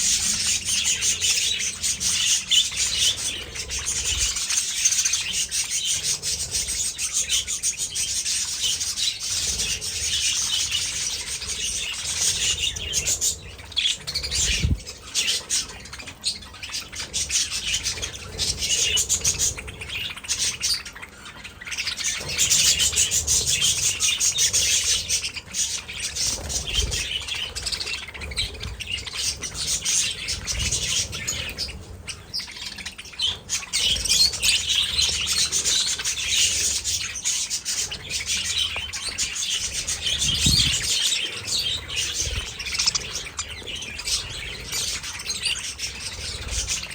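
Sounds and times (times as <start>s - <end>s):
budgerigars chattering: 0.0s - 46.9s.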